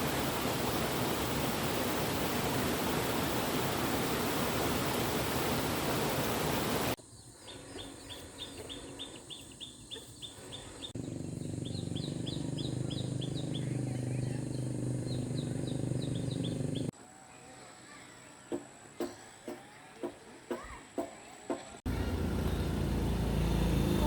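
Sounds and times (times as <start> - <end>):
bird chirping: 7.0 - 16.9.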